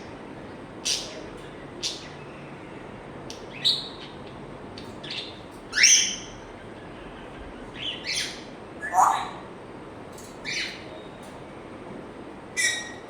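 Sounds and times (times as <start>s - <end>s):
parrot chirps and whistles: 5.7s - 6.4s, 7.9s - 9.4s, 12.6s - 13.0s.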